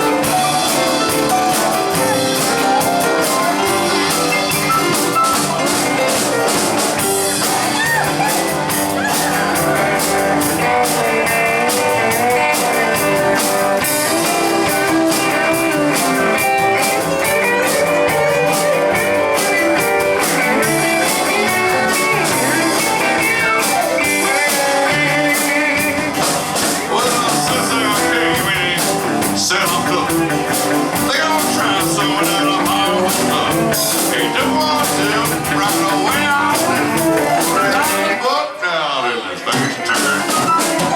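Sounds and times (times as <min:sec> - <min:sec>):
drum kit beat: 0:00.0 - 0:38.2, 0:39.4 - 0:40.9
steel guitar: 0:00.0 - 0:38.2
electric guitar: 0:00.0 - 0:38.4, 0:39.4 - 0:40.9
keyboard: 0:00.0 - 0:40.9.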